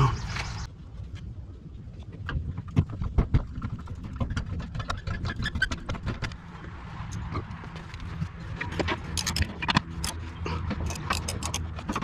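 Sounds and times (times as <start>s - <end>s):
metallic clicking of tools and bolts: 7.0s - 12.0s.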